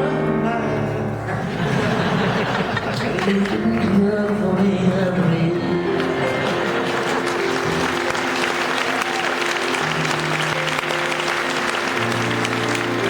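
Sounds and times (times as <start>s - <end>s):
audience applauding: 1.4s - 13.0s
live band playing pop music: 3.2s - 7.6s.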